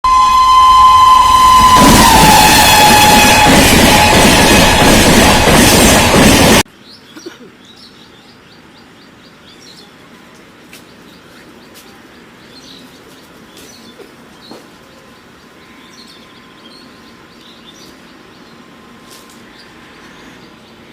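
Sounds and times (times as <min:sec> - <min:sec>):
train horn: 0:00.0 - 0:06.6
train wheels rushing on rail: 0:00.1 - 0:06.7
birds chirping: 0:06.7 - 0:20.9.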